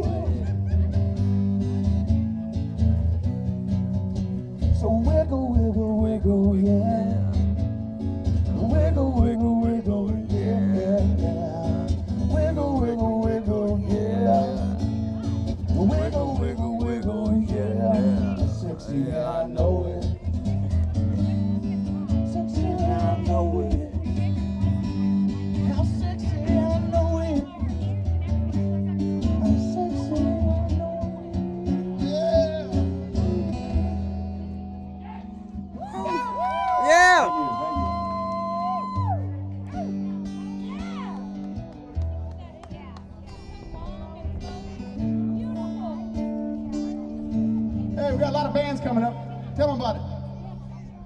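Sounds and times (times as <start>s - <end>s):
steady bass line: 0.0s - 42.6s
guitar: 0.0s - 51.0s.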